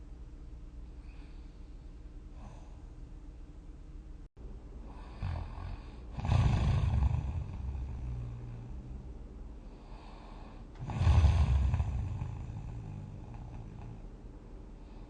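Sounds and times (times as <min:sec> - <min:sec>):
quiet breathing: 0:00.8 - 0:03.4, 0:04.7 - 0:15.0
person snoring: 0:04.9 - 0:09.1, 0:09.8 - 0:14.1.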